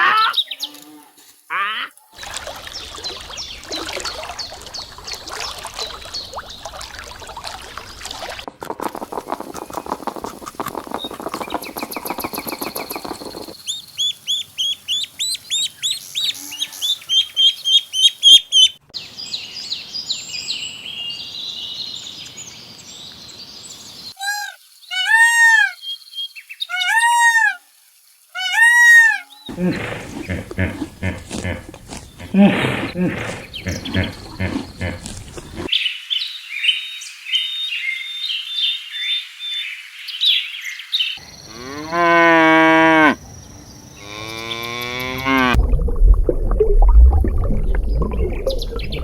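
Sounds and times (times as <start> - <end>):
overlapping animal calls: 1.5 - 2.0, 28.4 - 35.7
rapid animal calls: 28.4 - 35.7.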